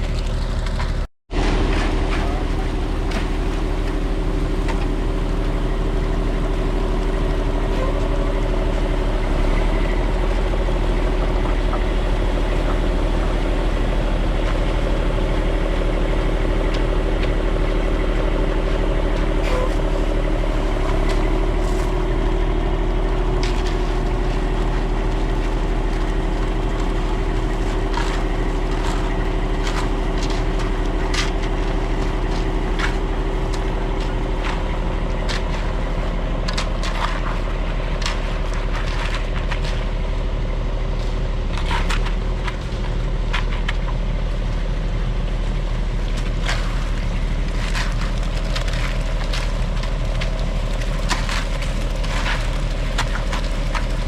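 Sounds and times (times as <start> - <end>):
heavy engine idling: 0.0 - 54.0
scrapes and knocks: 19.1 - 39.9.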